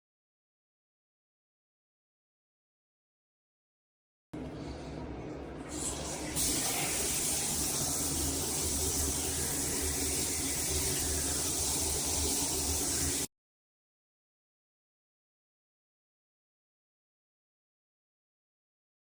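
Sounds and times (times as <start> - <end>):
shower head spraying water: 5.8 - 13.3.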